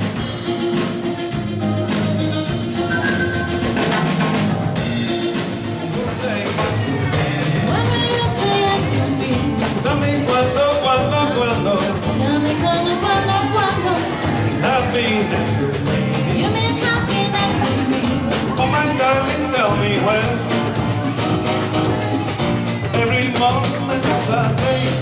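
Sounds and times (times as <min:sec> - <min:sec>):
drum kit: 0:00.0 - 0:25.0
live band playing pop rock: 0:00.0 - 0:25.0
person singing: 0:05.1 - 0:25.0.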